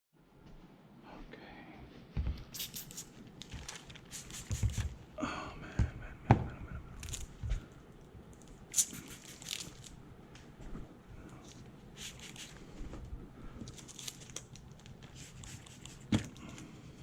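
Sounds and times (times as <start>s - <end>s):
film crinkling and rustling: 3.3s - 5.0s, 8.4s - 10.5s, 11.4s - 16.8s.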